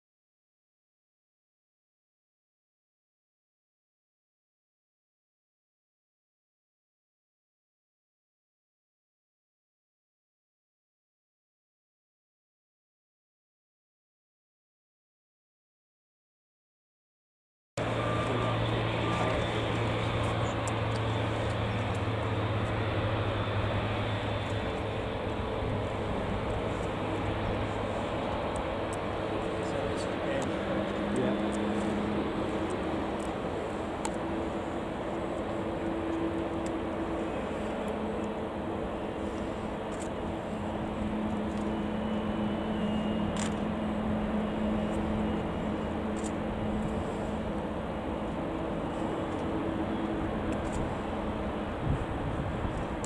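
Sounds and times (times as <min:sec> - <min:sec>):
jet engines running: 0:17.8 - 0:53.0.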